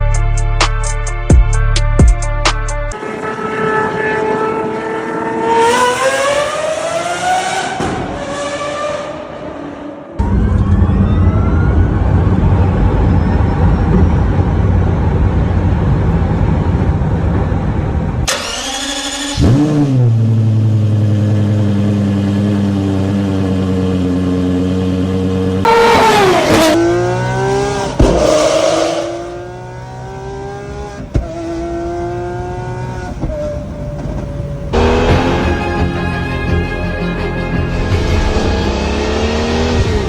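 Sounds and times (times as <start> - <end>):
car engine revving: 4.4 - 10.3, 18.3 - 36.0, 37.6 - 40.0
car engine starting and idling: 12.3 - 21.1.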